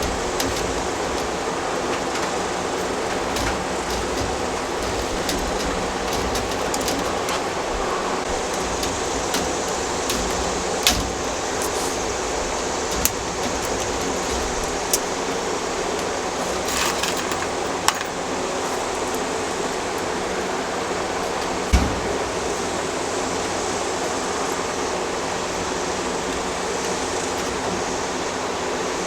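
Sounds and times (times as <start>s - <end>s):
sharp clicks of wire mesh: 0.0s - 18.0s.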